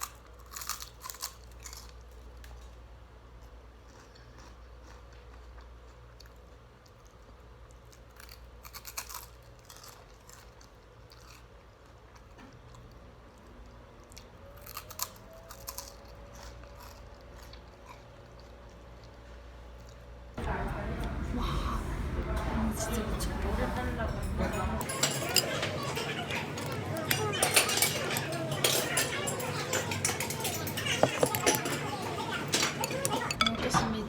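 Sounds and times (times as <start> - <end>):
person chewing crunchy snack: 0.0 - 2.7, 3.4 - 20.1
steady low hum: 20.4 - 25.3.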